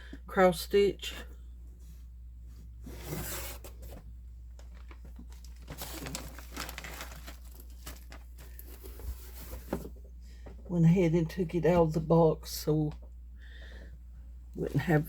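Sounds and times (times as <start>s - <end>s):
low steady hum: 0.0s - 15.0s
packaging crinkling and rustling: 3.4s - 10.0s.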